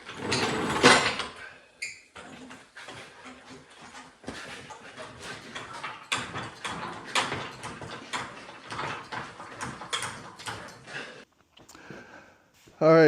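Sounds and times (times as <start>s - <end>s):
clunks and knocks of tools: 2.2s - 11.2s.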